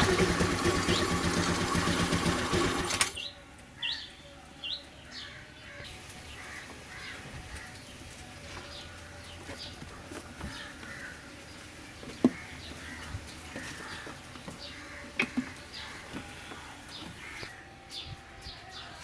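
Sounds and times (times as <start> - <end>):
scooter engine running: 0.0 - 3.3
birds chirping: 0.0 - 19.0.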